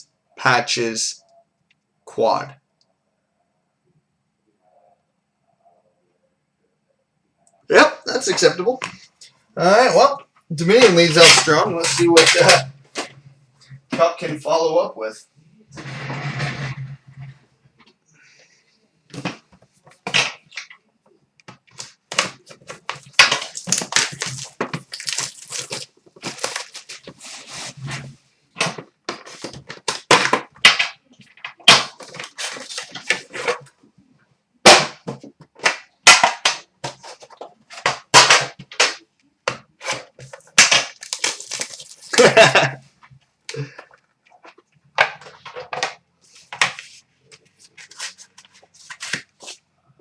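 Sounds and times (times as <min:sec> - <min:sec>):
plastic wrapping tearing and crinkling: 0:10.6 - 0:13.1, 0:21.7 - 0:28.0, 0:29.1 - 0:33.6, 0:39.8 - 0:42.7, 0:47.6 - 0:49.6.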